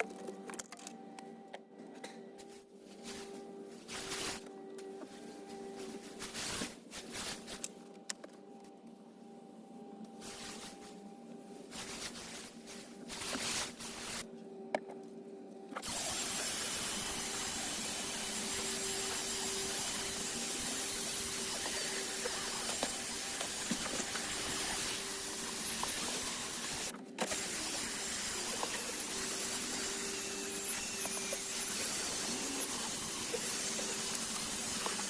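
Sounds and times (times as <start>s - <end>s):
cleaner spray hissing bursts: 15.8s - 35.0s.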